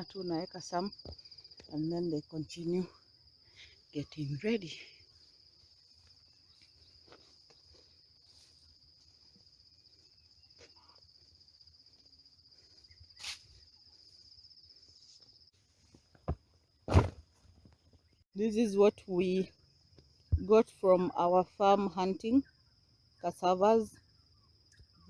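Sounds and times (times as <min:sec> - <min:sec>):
cricket trilling: 0:00.0 - 0:15.6, 0:18.4 - 0:25.0
soft thumps: 0:16.1 - 0:17.2.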